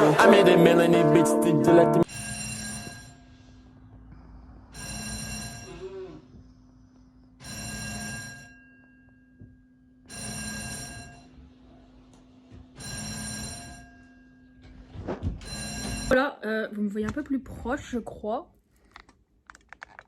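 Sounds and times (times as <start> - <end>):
fire alarm bell ringing: 0.1 - 3.5, 4.7 - 5.9, 7.4 - 11.4, 12.7 - 14.7, 15.4 - 16.2.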